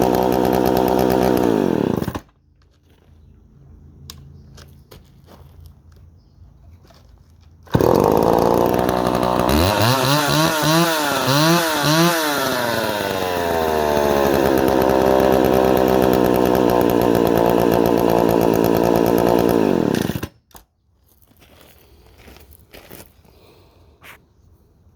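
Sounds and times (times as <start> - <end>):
chainsaw revving: 0.0 - 2.3, 7.7 - 20.4.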